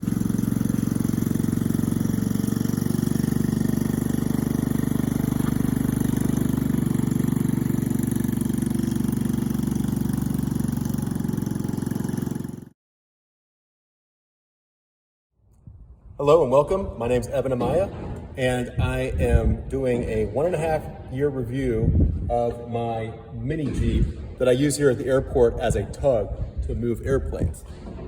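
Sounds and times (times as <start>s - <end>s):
small petrol engine puttering: 0.0s - 12.7s.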